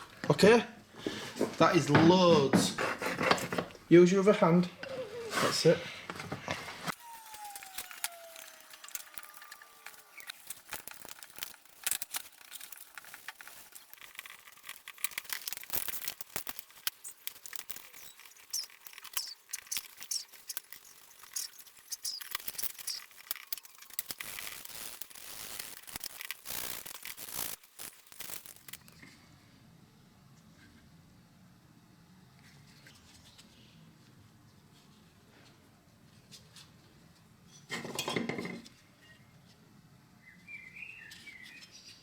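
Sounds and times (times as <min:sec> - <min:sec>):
short falling squeak: 0:07.0 - 0:11.2
brush scraping on metal: 0:09.6 - 0:28.6.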